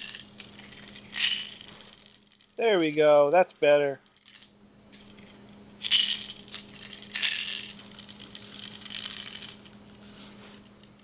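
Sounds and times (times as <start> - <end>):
plastic toys rattling: 0.0 - 3.1, 4.0 - 9.8.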